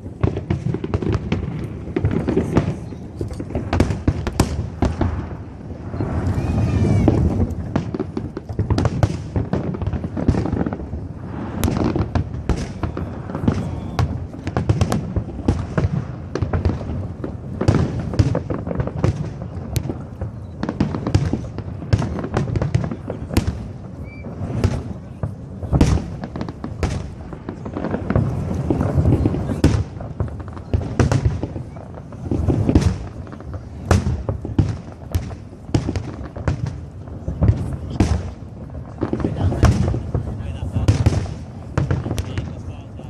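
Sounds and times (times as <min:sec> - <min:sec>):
fireworks cracks and bangs: 0:00.0 - 0:43.0
fireworks deep booms: 0:00.0 - 0:43.0.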